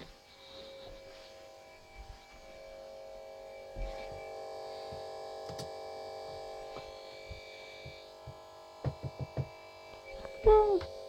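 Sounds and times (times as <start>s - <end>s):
electrical buzzing hum: 0.0s - 11.0s
light knocks and clicks: 7.9s - 9.6s.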